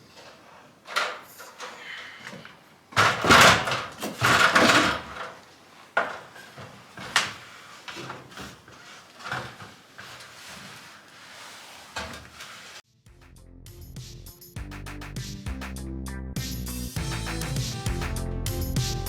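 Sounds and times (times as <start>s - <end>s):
metal scraping and rattling: 3.0s - 5.4s.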